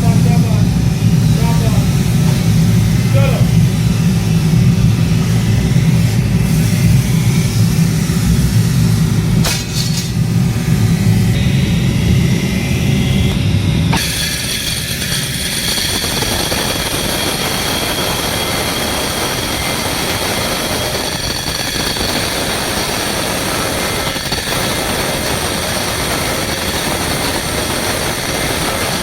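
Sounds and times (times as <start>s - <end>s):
faint high whine: 0.0s - 29.0s
rushing machine noise: 0.0s - 29.0s.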